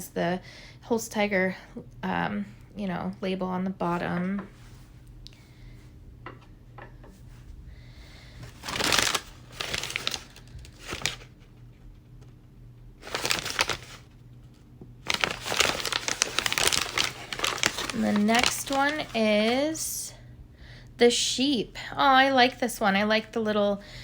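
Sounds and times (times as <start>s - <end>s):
packaging crinkling: 8.2s - 11.4s, 13.0s - 14.1s, 15.0s - 19.8s.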